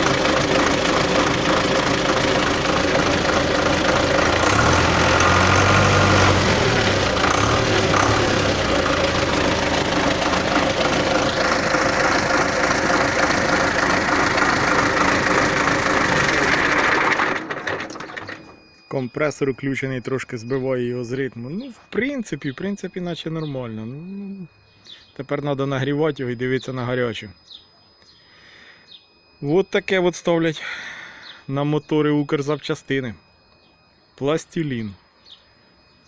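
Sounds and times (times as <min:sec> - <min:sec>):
tractor diesel engine idling: 0:00.0 - 0:18.7.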